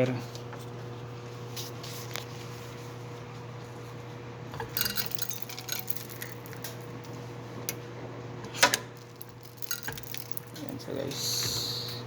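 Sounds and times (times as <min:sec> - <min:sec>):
steady low hum: 0:00.0 - 0:12.0
grinder parts clinking: 0:04.7 - 0:06.8, 0:09.0 - 0:11.2.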